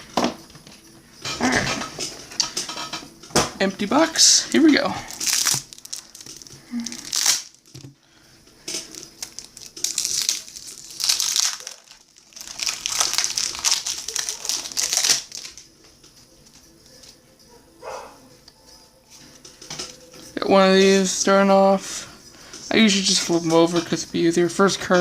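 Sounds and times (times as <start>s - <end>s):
wrapper crinkling: 3.9s - 8.0s, 8.6s - 17.2s.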